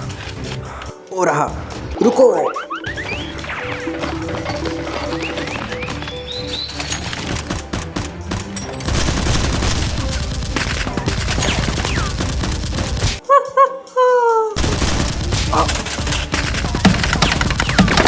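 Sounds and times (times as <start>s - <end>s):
rapid gunfire bursts: 3.5s - 13.1s, 14.6s - 18.0s.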